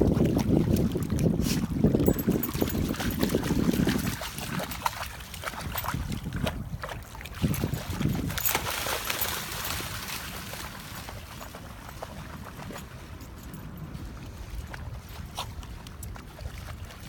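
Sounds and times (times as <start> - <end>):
water lapping at shore: 0.0 - 17.0
wind buffeting microphone: 0.0 - 17.0.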